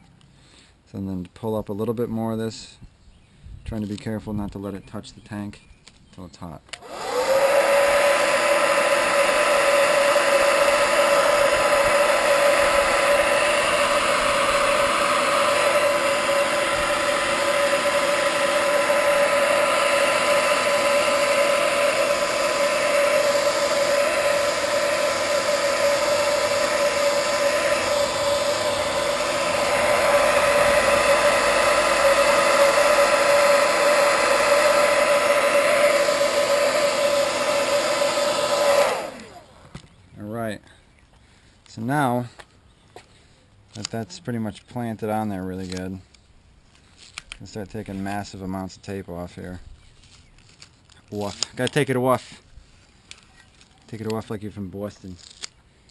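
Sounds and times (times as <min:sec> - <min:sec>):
hot-air blower running: 0:06.8 - 0:39.9.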